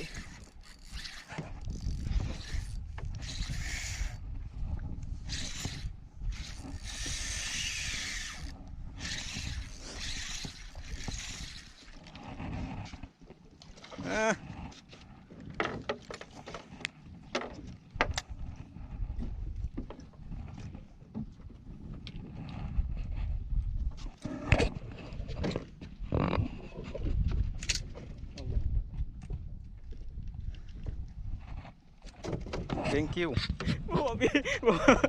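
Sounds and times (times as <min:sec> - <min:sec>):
water noise: 0:00.0 - 0:35.0
wind: 0:00.0 - 0:35.0.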